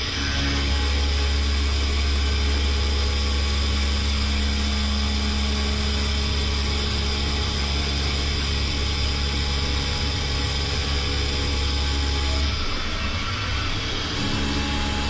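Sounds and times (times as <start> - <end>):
machine humming with high whine: 0.0 - 15.0.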